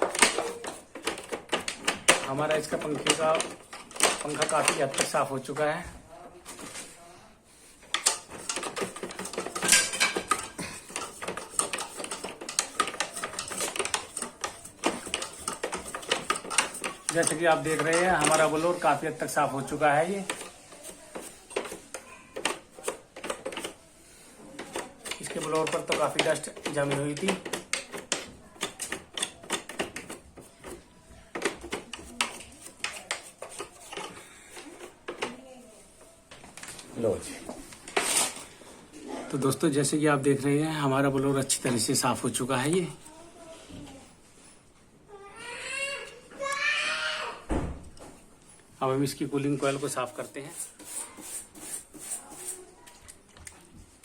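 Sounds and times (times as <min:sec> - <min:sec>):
brush scrubbing plastic vanes: 0:00.0 - 0:05.8, 0:07.6 - 0:36.2, 0:49.6 - 0:53.0.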